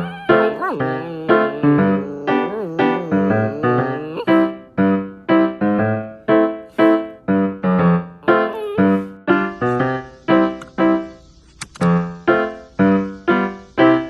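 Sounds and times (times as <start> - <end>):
piano notes: 0.0 - 11.2.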